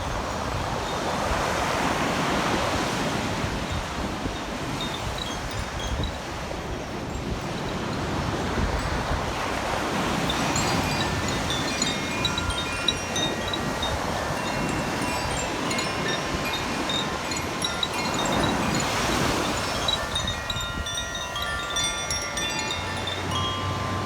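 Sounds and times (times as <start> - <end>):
wind chimes tinkling: 0.0 - 24.0
wind noise on microphone: 0.0 - 24.0
surf rushing: 9.4 - 24.0.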